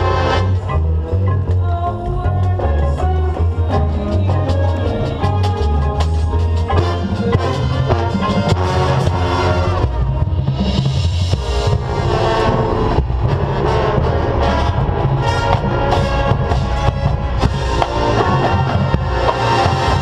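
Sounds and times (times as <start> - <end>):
marching band drums: 5.1 - 20.0
marching band winds: 10.9 - 20.0.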